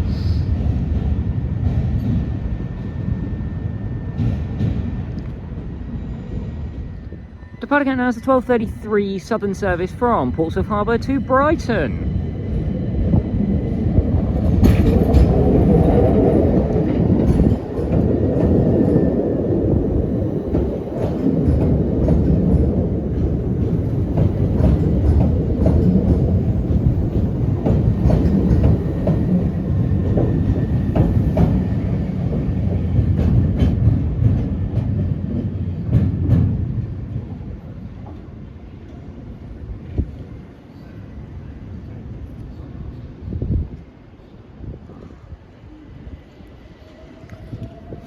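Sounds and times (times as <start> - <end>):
train rumble: 0.0 - 48.0
wheels clicking over rail joints: 14.2 - 31.7.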